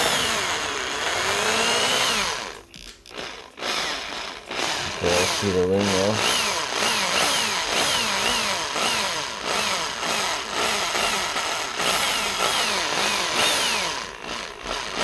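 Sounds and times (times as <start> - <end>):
small drill boring into metal: 0.0 - 15.0.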